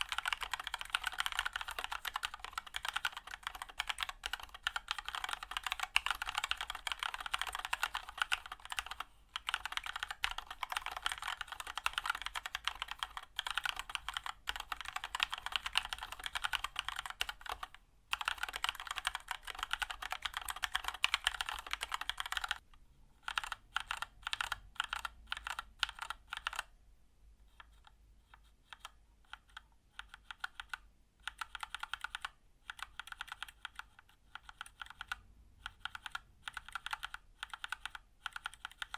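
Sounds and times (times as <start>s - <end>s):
typing on mechanical keyboard: 0.0s - 22.6s, 23.2s - 26.7s, 27.5s - 38.9s.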